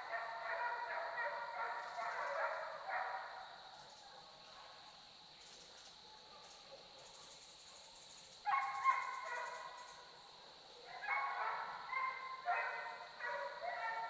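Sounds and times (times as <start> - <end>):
hounds baying: 10.9 - 14.0.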